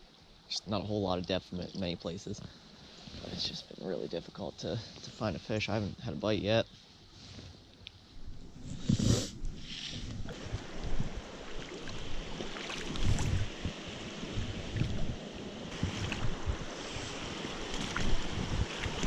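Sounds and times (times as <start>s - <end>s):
shallow creek water: 0.0s - 19.0s
wind buffeting microphone: 8.2s - 19.0s.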